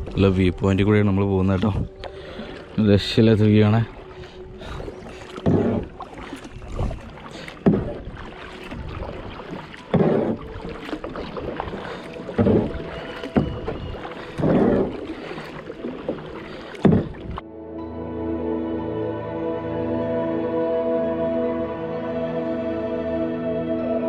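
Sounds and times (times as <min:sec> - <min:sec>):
paddle splashing in water: 0:00.0 - 0:17.4
water trickling and lapping: 0:00.0 - 0:17.5.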